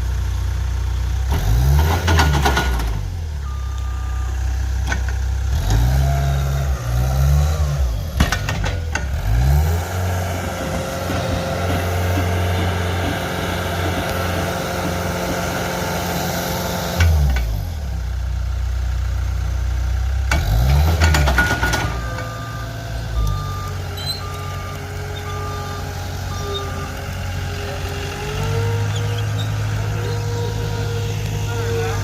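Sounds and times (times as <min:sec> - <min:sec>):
digging machine engine running: 0:00.0 - 0:32.0
reverse warning beeper: 0:21.8 - 0:32.0.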